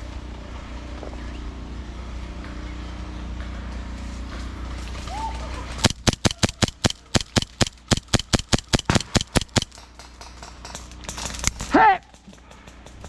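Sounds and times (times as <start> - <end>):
airsoft gun shots: 5.8 - 10.0.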